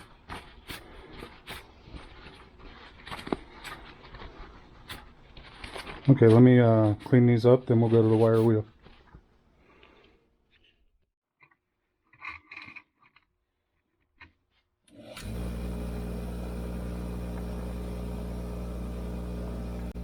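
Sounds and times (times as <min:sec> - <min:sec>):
handling clinks and rubs: 0:00.0 - 0:10.8
electric wire wheel motor humming: 0:14.9 - 0:20.0.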